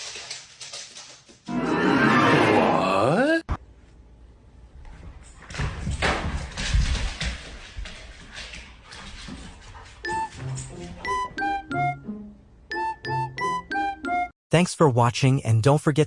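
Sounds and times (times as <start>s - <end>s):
dog scuffling: 4.9s - 11.0s
piano notes: 10.1s - 14.3s.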